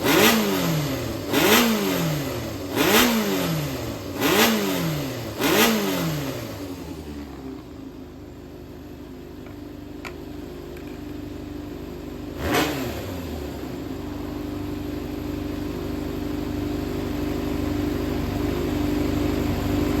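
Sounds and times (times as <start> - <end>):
motorcycle engine idling: 6.3 - 12.4, 13.1 - 20.0.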